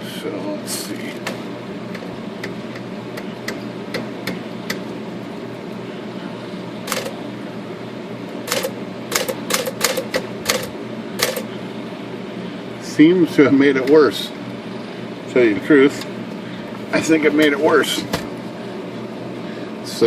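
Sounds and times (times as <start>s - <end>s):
typewriter type strikes: 6.9s - 7.1s, 8.5s - 11.5s.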